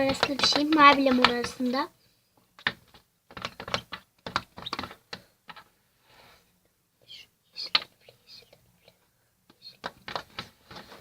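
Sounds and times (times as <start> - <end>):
slime clicking and tapping: 0.0 - 1.7, 2.6 - 5.6.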